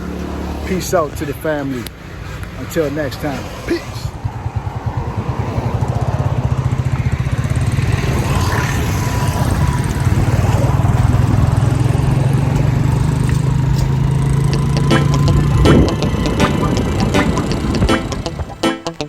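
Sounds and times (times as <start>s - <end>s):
small engine running: 4.5s - 17.8s.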